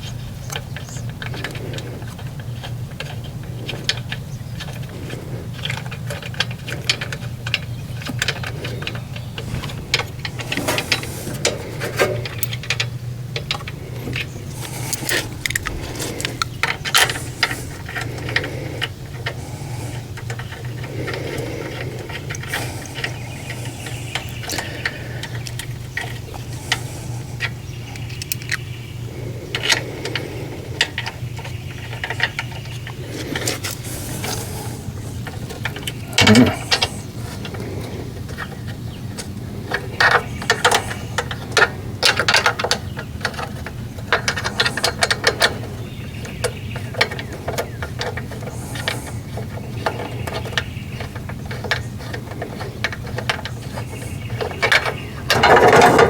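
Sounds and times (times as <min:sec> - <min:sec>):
steady low hum: 0:00.0 - 0:56.0
metal tools clinking: 0:09.4 - 0:18.4.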